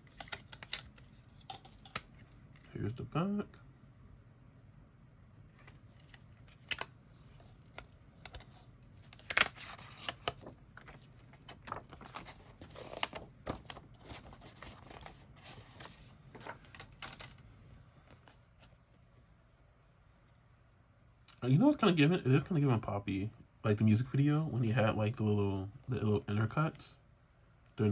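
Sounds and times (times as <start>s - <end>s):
paper and plastic clicks and rustles: 0.0s - 2.8s, 5.5s - 17.4s.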